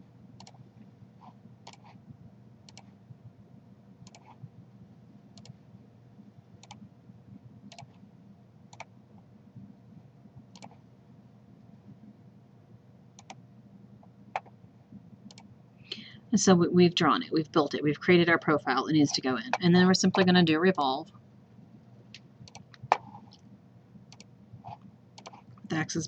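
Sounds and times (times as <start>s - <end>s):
faint low hum: 0.0s - 26.0s
computer mouse clicks: 0.4s - 0.6s, 1.6s - 2.0s, 2.6s - 3.0s, 4.0s - 4.4s, 5.3s - 5.6s, 6.6s - 6.8s, 7.7s - 8.0s, 8.7s - 9.0s, 10.5s - 10.8s, 13.2s - 13.4s, 15.2s - 15.5s, 22.1s - 23.5s, 24.1s - 25.5s.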